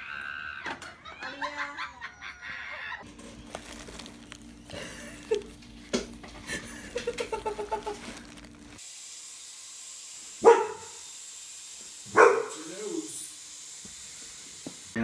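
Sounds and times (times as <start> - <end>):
dog barking loudly: 10.4 - 11.0, 12.1 - 12.6
dog yipping: 10.4 - 11.0, 12.1 - 12.6.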